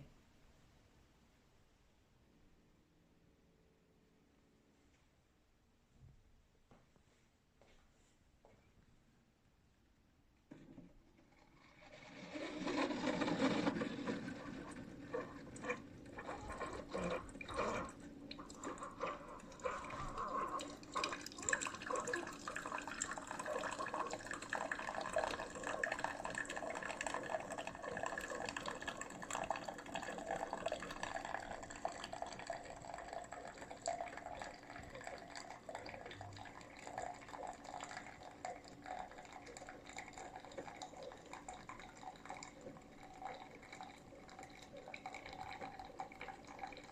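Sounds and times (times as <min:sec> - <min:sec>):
coffee maker brewing: 0:10.5 - 0:46.9
coffee pouring into a cup: 0:10.5 - 0:46.9.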